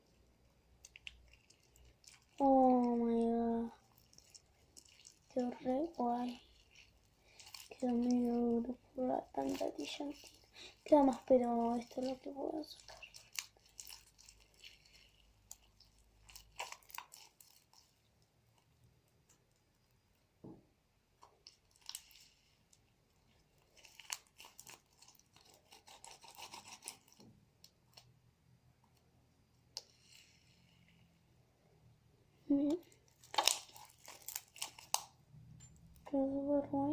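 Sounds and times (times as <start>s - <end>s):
sticky slime clicks and crackles: 11.0s - 17.8s, 32.7s - 35.2s.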